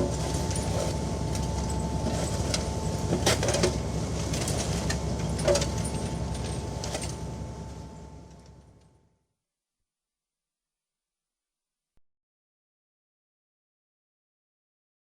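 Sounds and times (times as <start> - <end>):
low engine rumble: 0.0 - 9.0
faint steady whine: 0.0 - 9.2.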